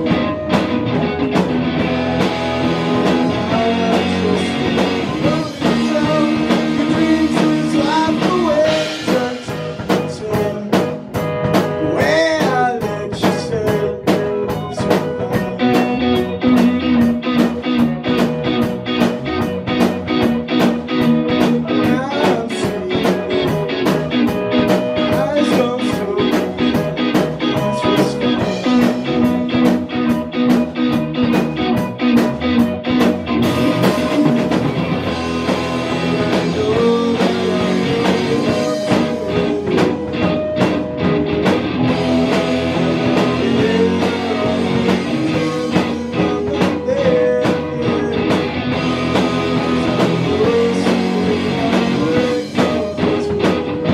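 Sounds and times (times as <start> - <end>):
blues-rock guitar: 0.0 - 53.9
steady drum beat: 0.0 - 53.9.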